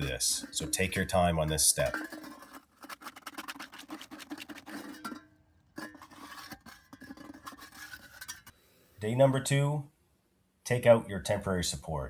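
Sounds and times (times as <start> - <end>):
rapid scratchy scraping: 0.0 - 5.1, 5.8 - 8.5.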